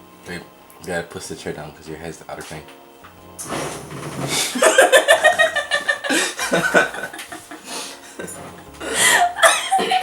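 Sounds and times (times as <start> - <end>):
woman laughing: 4.5 - 10.0.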